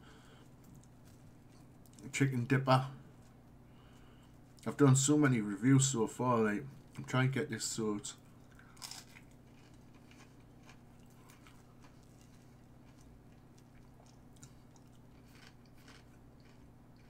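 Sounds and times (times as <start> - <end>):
person chewing: 8.2 - 17.0.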